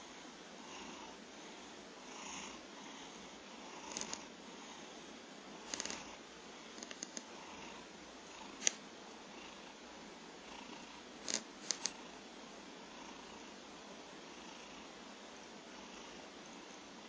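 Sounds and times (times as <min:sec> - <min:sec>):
cat snoring: 0:02.0 - 0:04.8, 0:05.7 - 0:06.2.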